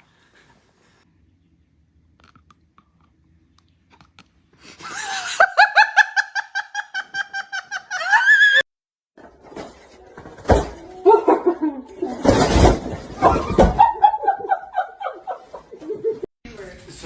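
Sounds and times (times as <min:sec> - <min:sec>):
high-pitched laughter: 0:04.8 - 0:08.6, 0:11.0 - 0:12.2.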